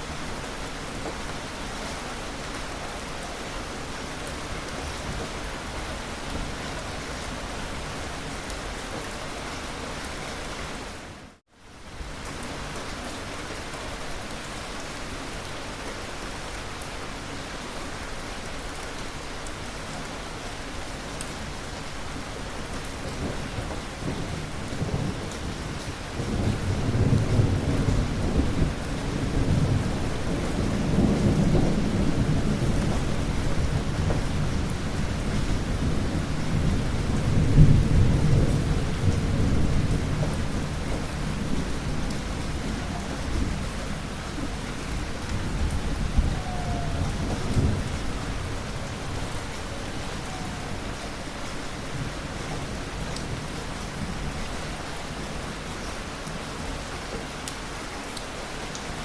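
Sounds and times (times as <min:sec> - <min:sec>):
steady rain: 0:00.0 - 0:59.0
thunder rumbling: 0:22.6 - 0:54.6.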